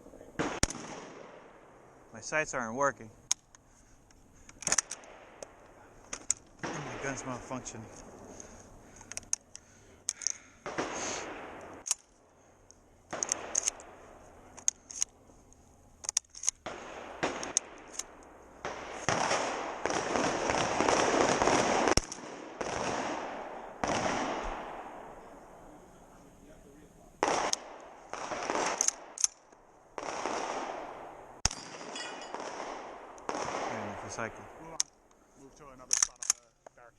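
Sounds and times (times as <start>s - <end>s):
shotgun blasts: 0.2s - 1.8s, 4.6s - 8.4s, 10.5s - 12.0s, 13.1s - 14.0s, 16.6s - 25.7s, 27.2s - 29.2s, 30.0s - 34.8s
metallic clacks of gun action: 4.4s - 5.5s, 13.1s - 13.9s, 35.9s - 36.5s.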